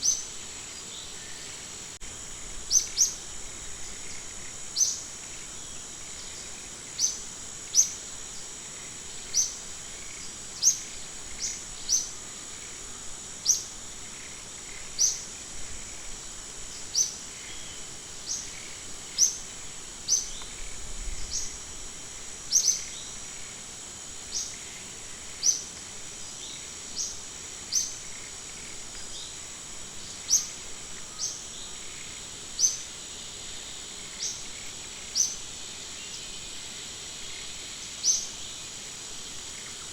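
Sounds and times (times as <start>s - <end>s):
high insect drone: 0.0s - 39.9s.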